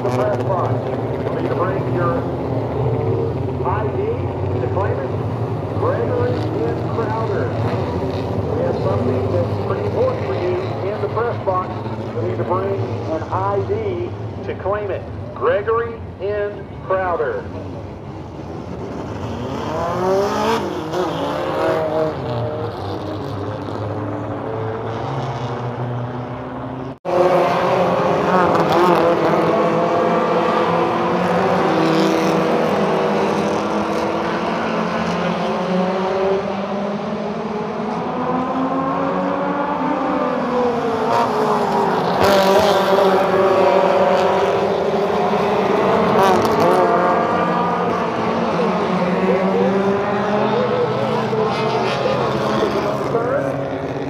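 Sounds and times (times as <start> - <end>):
race car engines: 0.0 - 54.0.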